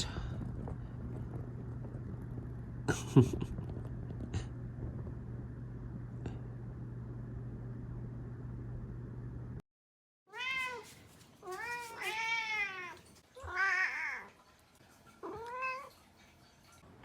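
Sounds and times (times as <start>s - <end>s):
steady low hum: 0.0s - 9.6s
young cat meowing: 10.3s - 10.9s.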